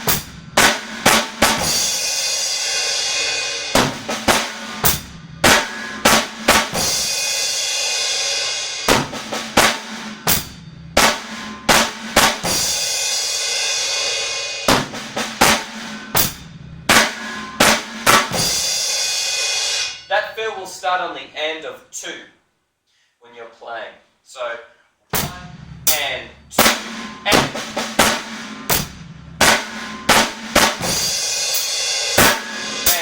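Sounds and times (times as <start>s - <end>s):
kick drum: 0.0s - 1.8s, 3.8s - 7.0s, 8.9s - 12.7s, 14.7s - 18.6s, 25.2s - 26.0s, 26.6s - 31.1s
snare drum strokes: 0.0s - 7.5s, 8.8s - 13.3s, 14.2s - 19.9s, 25.2s - 33.0s
cymbal ringing: 0.0s - 20.2s, 25.2s - 33.0s
hi-hat: 25.2s - 33.0s.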